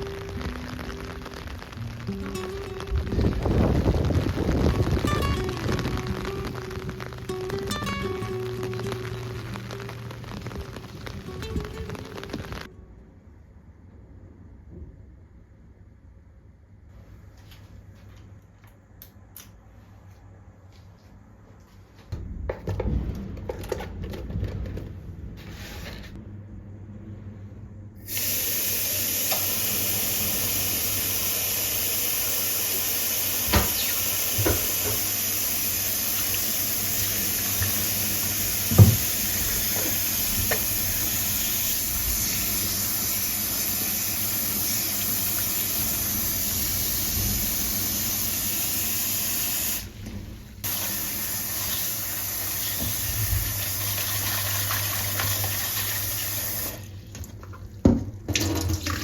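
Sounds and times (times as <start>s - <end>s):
rushing water: 0.0s - 12.7s.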